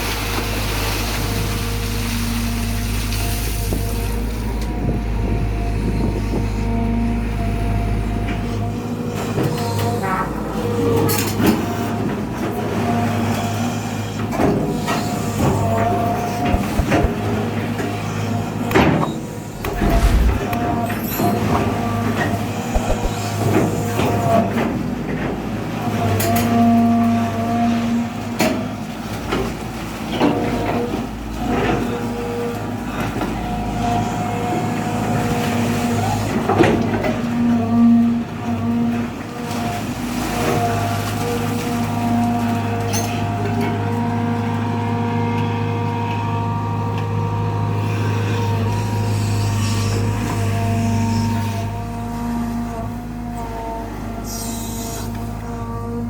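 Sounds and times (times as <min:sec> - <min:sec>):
hydraulic whine: 0:15.0 - 0:21.5, 0:22.5 - 0:23.9, 0:44.2 - 0:56.0
excavator diesel engine running: 0:16.5 - 0:17.4, 0:18.6 - 0:20.8, 0:22.8 - 0:23.2.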